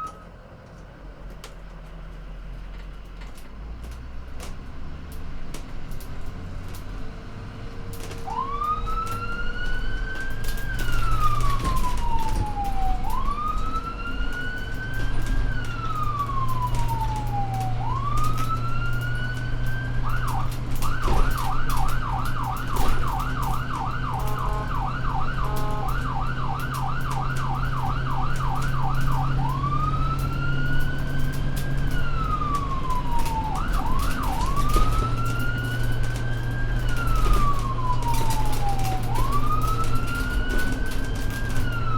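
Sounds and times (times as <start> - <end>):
electronic siren wailing and yelping: 15.8 - 31.1.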